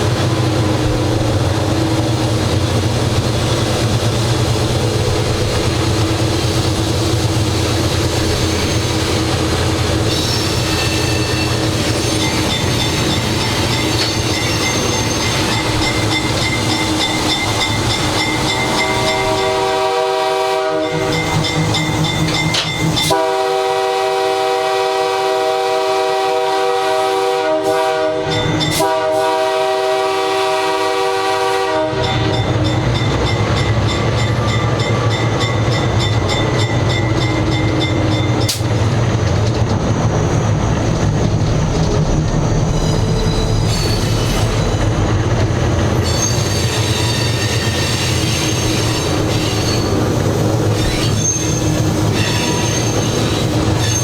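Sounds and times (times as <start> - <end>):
wheels squealing on rails: 0.0 - 54.0
locomotive air horn chord: 18.7 - 21.3, 23.0 - 32.5
locomotive low rumble: 30.6 - 46.2.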